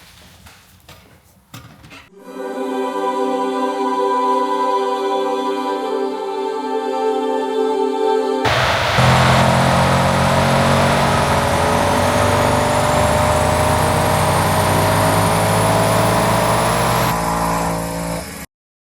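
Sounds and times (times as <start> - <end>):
car engine revving under load: 8.5 - 18.4.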